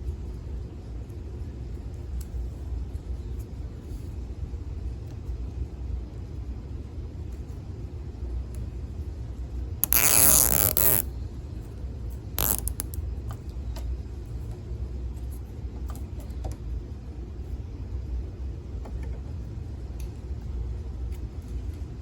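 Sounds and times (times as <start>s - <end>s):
zip tie ratcheting: 9.8s - 11.1s, 12.4s - 13.0s.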